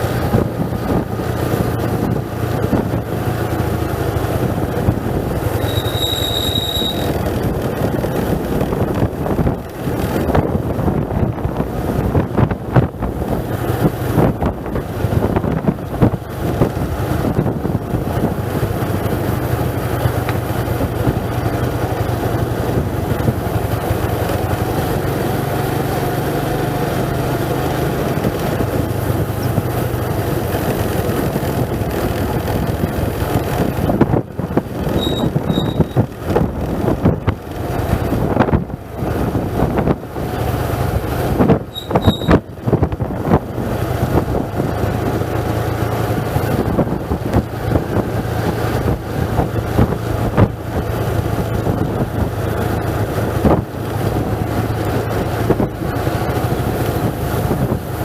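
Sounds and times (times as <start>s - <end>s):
vehicle engine running: 0.0s - 58.0s
wind noise on microphone: 0.0s - 58.0s
short high-pitched beeps: 5.6s - 7.1s, 35.0s - 36.0s, 41.7s - 42.4s.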